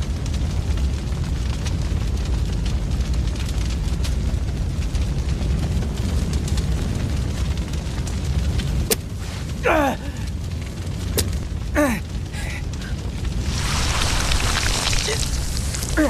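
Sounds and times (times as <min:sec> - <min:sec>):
low rumble: 0:00.0 - 0:16.0
sharp cracks: 0:08.4 - 0:16.0
rush of noise: 0:11.1 - 0:16.0.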